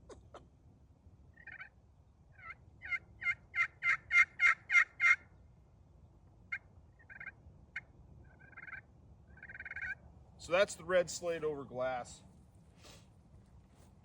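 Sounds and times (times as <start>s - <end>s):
turkey pot call yelps: 1.4s - 1.7s, 2.3s - 5.2s, 6.5s - 10.0s.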